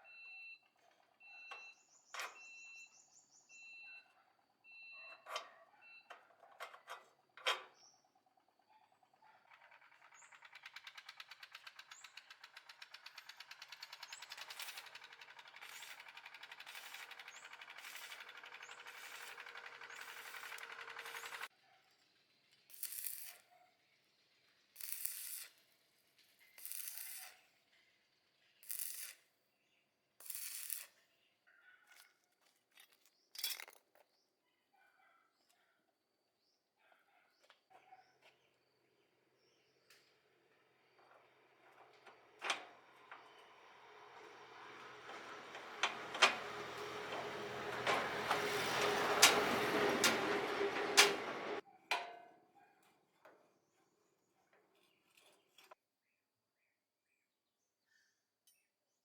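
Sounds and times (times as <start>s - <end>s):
rapid mechanical rattle: 8.9s - 21.5s, 40.8s - 51.6s
clicks: 44.2s - 52.1s.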